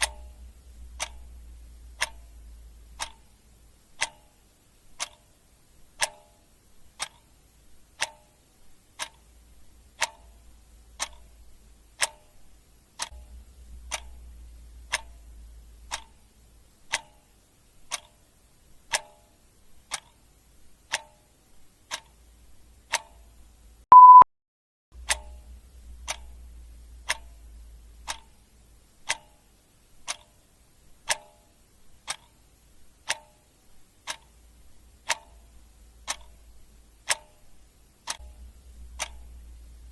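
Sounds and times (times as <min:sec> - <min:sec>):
clock ticking: 0:00.0 - 0:24.2, 0:25.0 - 0:39.9
short high beep: 0:23.9 - 0:24.3.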